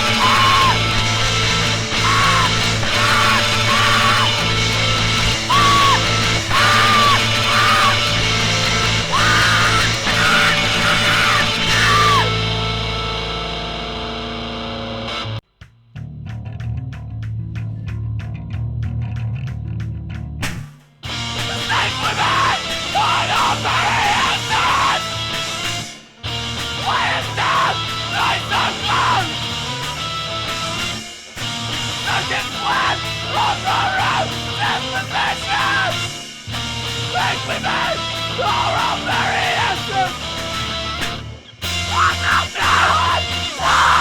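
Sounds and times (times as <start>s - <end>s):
screamed vocals: 0.0s - 12.4s, 21.5s - 25.2s, 26.8s - 29.4s, 32.0s - 36.1s, 37.0s - 40.7s, 41.8s - 44.0s
lone guitar line: 0.0s - 15.4s, 21.1s - 44.0s
punk rock band playing: 0.0s - 15.4s, 21.0s - 44.0s.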